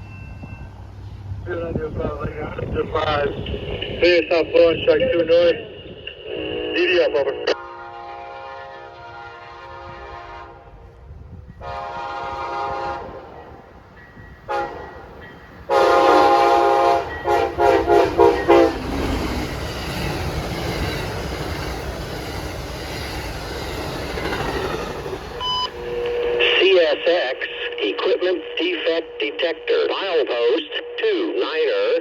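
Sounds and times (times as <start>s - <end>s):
locomotive air horn: 5.8s - 13.3s, 14.4s - 15.1s, 15.7s - 19.1s
train wheels rumbling on rail: 7.5s - 27.8s.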